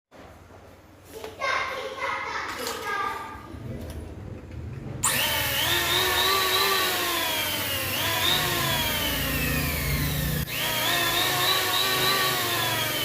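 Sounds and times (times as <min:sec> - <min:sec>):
power tool motor whining: 0:05.0 - 0:13.0.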